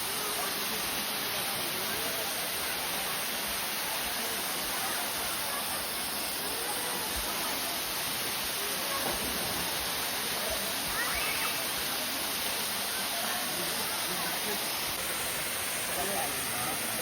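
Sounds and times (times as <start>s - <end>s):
faint distant voices: 0.0s - 17.0s
waterfall roaring: 0.0s - 17.0s.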